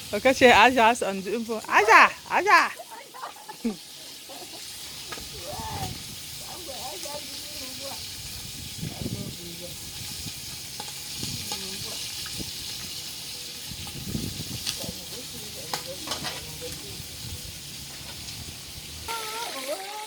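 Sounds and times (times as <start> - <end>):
food sizzling in oil: 0.0 - 20.0
wood fire crackles: 0.0 - 20.0.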